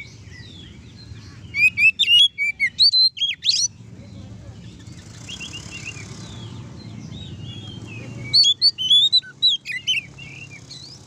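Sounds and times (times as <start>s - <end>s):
bird singing whistled notes: 0.0s - 3.8s, 4.6s - 11.0s.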